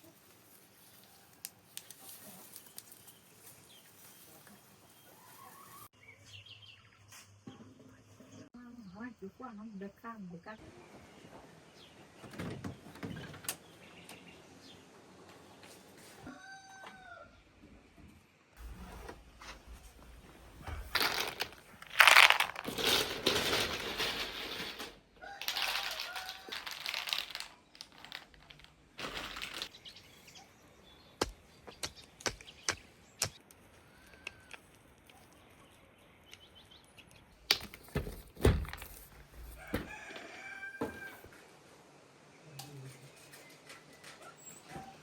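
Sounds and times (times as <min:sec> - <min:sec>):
faint chicken clucks: 0:04.3 - 0:06.3, 0:16.0 - 0:17.4.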